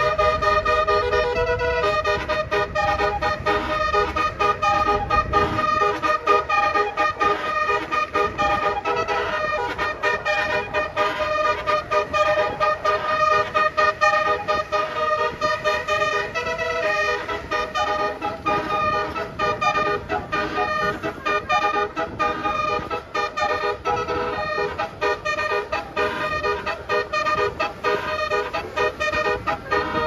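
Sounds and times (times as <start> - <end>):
low engine rumble: 0.0 - 30.0
musical air horns tooting: 0.0 - 30.0.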